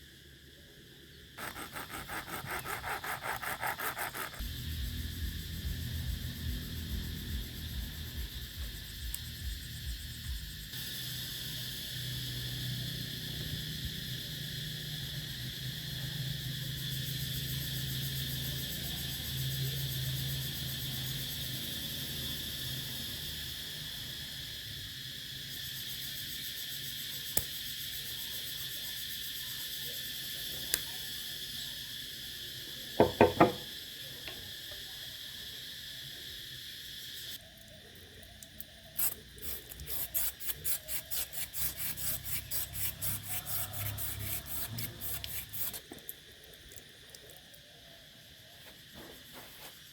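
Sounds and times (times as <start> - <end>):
crickets chirping: 0.0 - 49.9
rhythmic rubbing strokes: 1.4 - 4.7
sharp knocks: 33.0 - 33.7.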